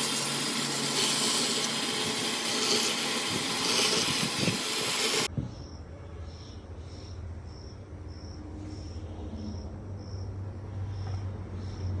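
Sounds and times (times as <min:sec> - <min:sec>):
cricket chirping: 0:07.5 - 0:11.8.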